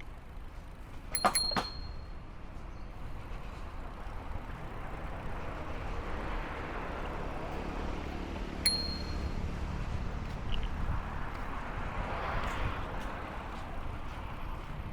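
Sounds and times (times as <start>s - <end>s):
wind and road rumble: 0.0s - 14.9s
bicycle bell ding: 1.1s - 2.2s, 8.6s - 9.6s.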